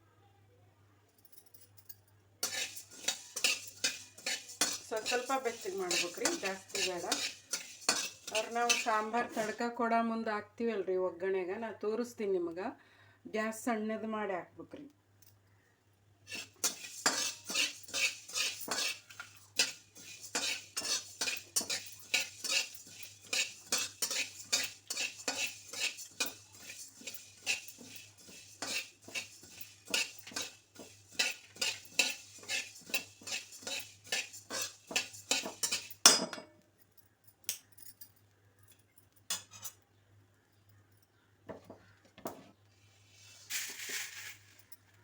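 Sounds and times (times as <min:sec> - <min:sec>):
spoon scraping spices in a pan: 0:02.4 - 0:09.8, 0:16.3 - 0:36.4, 0:38.8 - 0:45.0.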